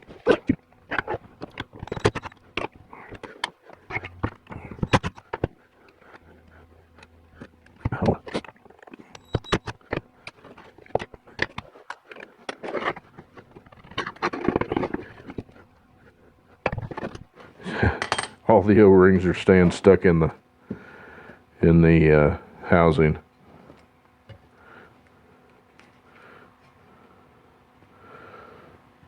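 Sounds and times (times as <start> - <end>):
metal parts clicking and tapping: 0.0 - 6.2, 7.0 - 15.5, 18.0 - 18.4
metal scraping: 0.0 - 15.6.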